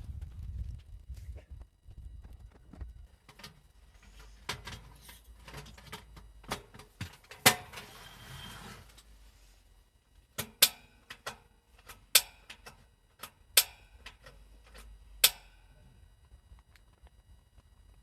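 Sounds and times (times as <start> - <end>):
sharp irregular clicks and cracks: 10.4 - 15.6, 16.2 - 18.0.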